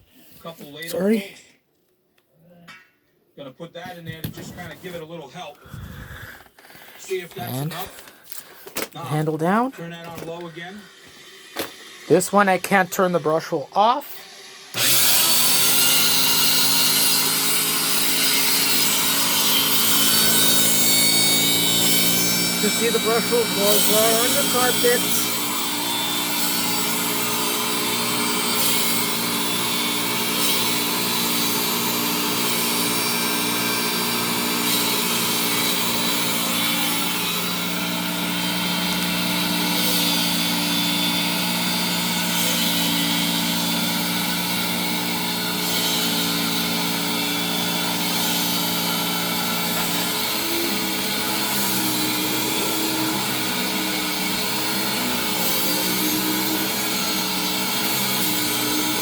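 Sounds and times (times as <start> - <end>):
vacuum cleaner motor hum: 10.1 - 45.1.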